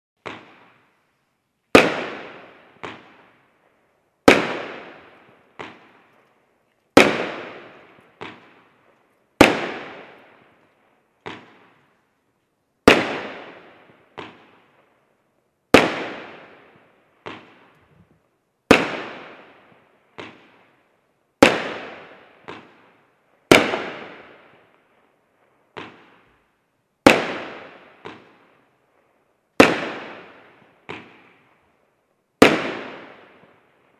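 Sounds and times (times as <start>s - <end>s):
firework bangs: 1.7s - 3.4s, 4.2s - 6.1s, 6.9s - 8.7s, 9.4s - 10.6s, 12.8s - 14.7s, 15.7s - 20.6s, 21.4s - 22.8s, 23.5s - 24.6s, 27.0s - 28.4s, 29.6s - 31.4s, 32.4s - 33.7s.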